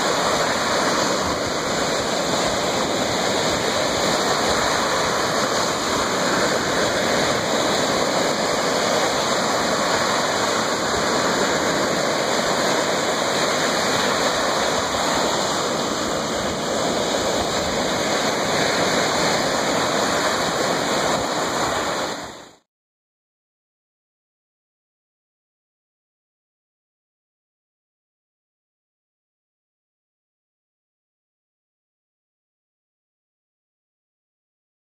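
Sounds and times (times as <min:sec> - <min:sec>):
surf washing on shore: 0:00.0 - 0:22.7.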